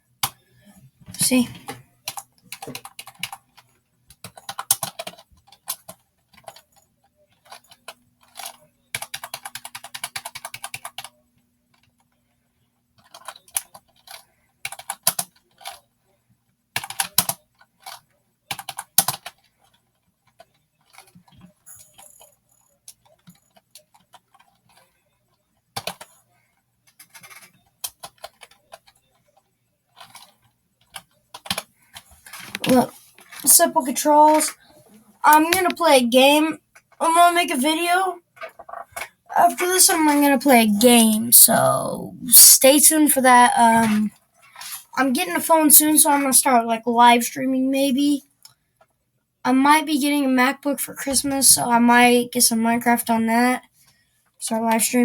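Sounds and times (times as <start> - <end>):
typing on computer keyboard: 0.2 - 0.5, 1.1 - 12.2, 12.8 - 15.9, 16.7 - 34.5.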